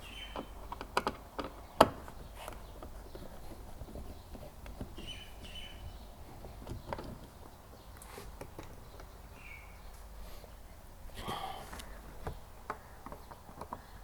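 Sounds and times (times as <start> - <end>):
screwdriver clicks and knocks: 0.4 - 2.1.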